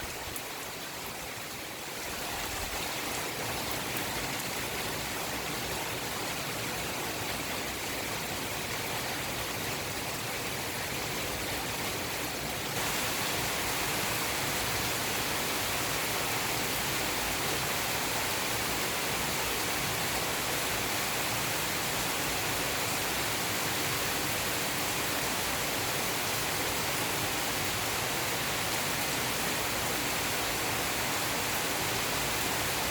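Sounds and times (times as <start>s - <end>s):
heavy rain falling: 12.2s - 18.9s, 26.3s - 32.9s.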